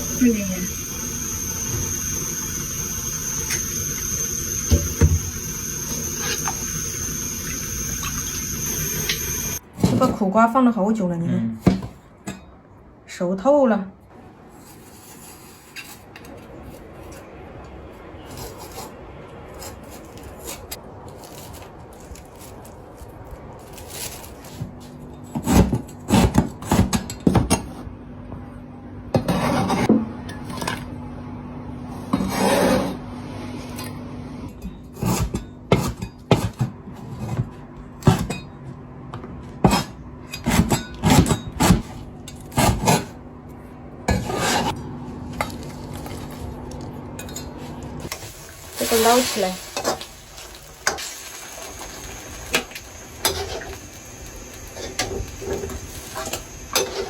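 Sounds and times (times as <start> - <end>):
utensil scraping cutting board: 29.2 - 29.9, 32.1 - 33.0, 39.6 - 43.2, 44.1 - 44.8.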